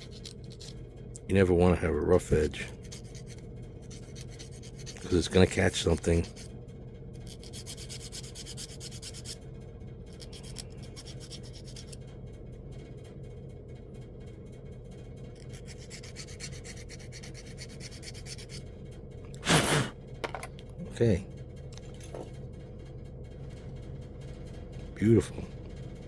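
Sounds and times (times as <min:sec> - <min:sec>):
low hum: 0:00.0 - 0:26.0
file rasping on copper pipe: 0:02.8 - 0:05.2, 0:07.3 - 0:09.4, 0:10.1 - 0:12.0, 0:15.4 - 0:18.6.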